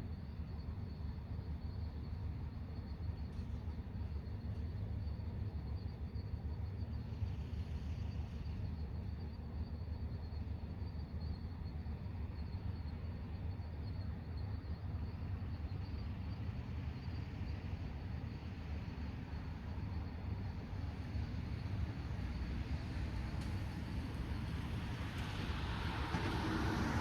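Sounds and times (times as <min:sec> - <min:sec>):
crickets chirping: 0:00.2 - 0:27.0
car approaching: 0:22.9 - 0:27.0.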